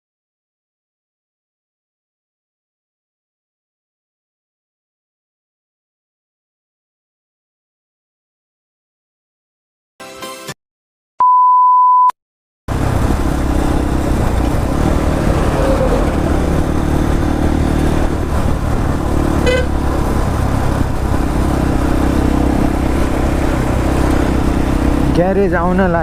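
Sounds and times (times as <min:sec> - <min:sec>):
beep tone: 0:11.2 - 0:12.2
motorcycle engine drone: 0:12.7 - 0:26.0
wind and road noise: 0:12.7 - 0:26.0.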